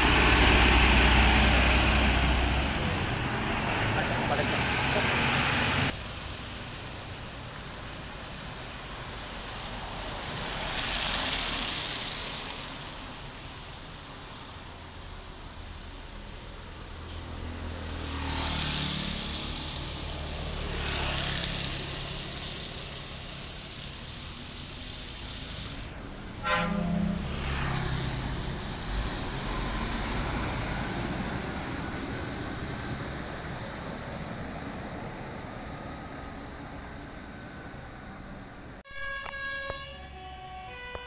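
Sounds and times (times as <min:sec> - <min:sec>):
traffic rumble: 0:00.0 - 0:41.0
vehicles passing close by: 0:00.0 - 0:41.0
car horn toot: 0:26.4 - 0:27.2, 0:38.9 - 0:41.0.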